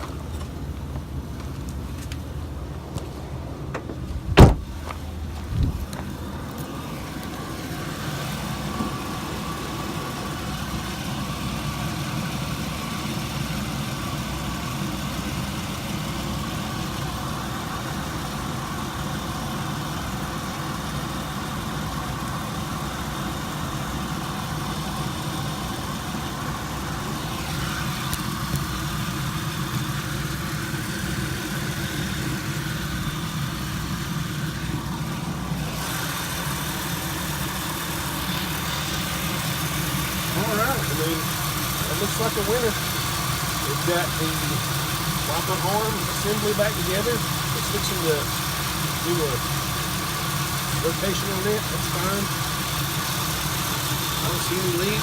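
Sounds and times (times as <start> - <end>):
minivan engine running: 0.0 - 55.0
road noise: 0.0 - 55.0
short thump: 3.7 - 6.1.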